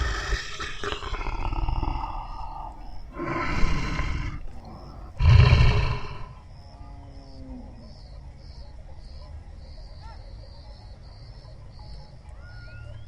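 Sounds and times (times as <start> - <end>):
big cat roaring: 0.0 - 6.4
crickets chirping: 0.0 - 13.0.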